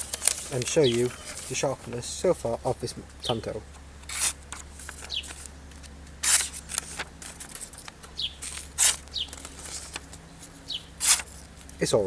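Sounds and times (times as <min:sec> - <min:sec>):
bird chirping: 0:00.0 - 0:02.2, 0:04.7 - 0:05.8, 0:07.8 - 0:11.9
paper rustling: 0:00.0 - 0:02.2, 0:03.2 - 0:11.9
knife blade slicing paper: 0:04.0 - 0:05.4, 0:06.2 - 0:10.0, 0:11.0 - 0:11.4.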